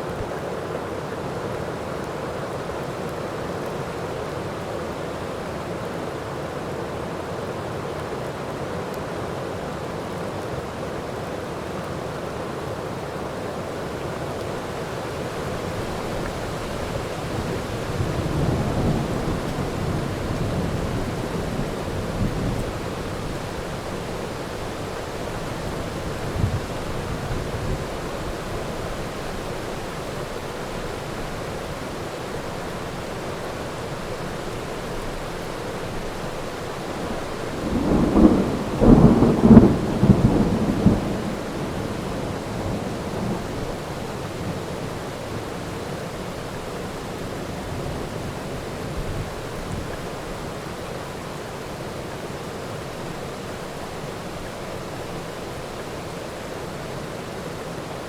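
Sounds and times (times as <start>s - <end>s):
heavy rain: 0.0s - 58.0s
thunder crack and rumble: 37.6s - 43.6s.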